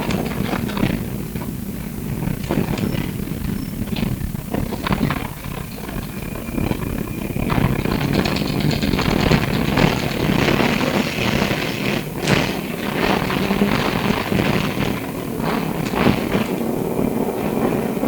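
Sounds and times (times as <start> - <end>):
tram rumbling: 0.0 - 18.0
wheels clicking on rails: 0.0 - 18.0.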